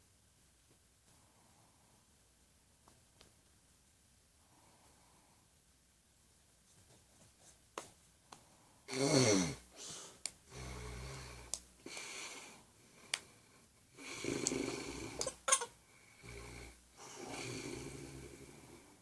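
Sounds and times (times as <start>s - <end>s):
man snoring: 8.9s - 9.7s, 10.5s - 11.5s, 13.9s - 15.2s, 16.1s - 19.0s.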